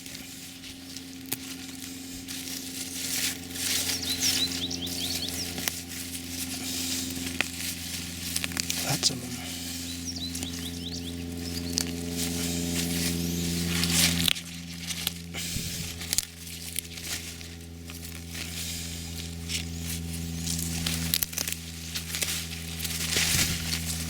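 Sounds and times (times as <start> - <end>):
crinkling and rustling: 0.0 - 8.8, 11.6 - 24.0
low hum with overtones: 0.0 - 24.0.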